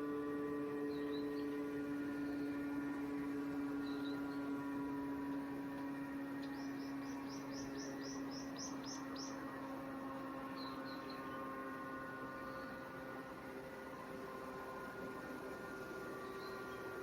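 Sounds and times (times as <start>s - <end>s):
steady low hum: 0.0s - 17.0s
bird chirping: 0.8s - 2.6s, 3.7s - 4.7s, 6.4s - 9.8s, 10.4s - 11.6s, 16.2s - 17.0s.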